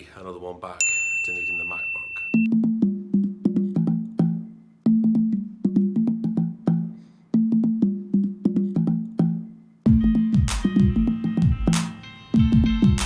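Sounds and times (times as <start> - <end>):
rhythmic background music: 2.4 - 13.0.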